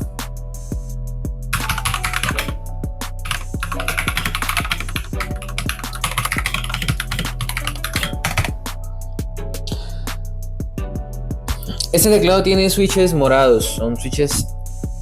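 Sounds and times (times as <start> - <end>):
background music with beat: 0.0 - 15.0
mechanical keyboard typing: 1.6 - 2.6, 3.3 - 8.5.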